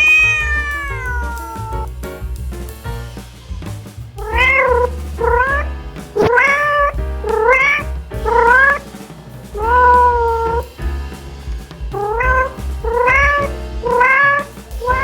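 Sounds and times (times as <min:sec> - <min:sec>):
cat meowing: 0:00.0 - 0:01.9, 0:04.2 - 0:08.8, 0:09.6 - 0:10.7, 0:12.0 - 0:15.0
background music: 0:00.0 - 0:15.0.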